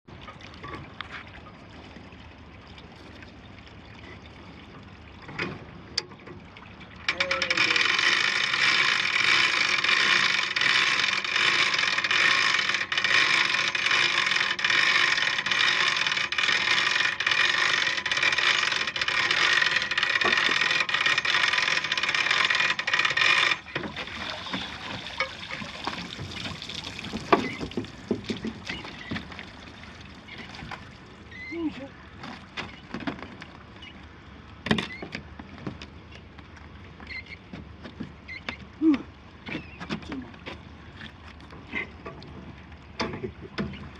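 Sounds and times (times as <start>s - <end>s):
water dripping: 23.9s - 30.9s.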